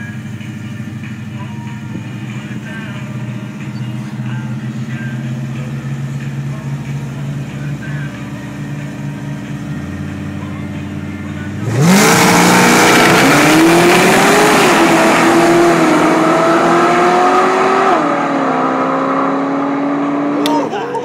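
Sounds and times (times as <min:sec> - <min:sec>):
engines idling: 0:00.0 - 0:18.6, 0:20.4 - 0:21.0
cars accelerating hard: 0:11.4 - 0:21.0.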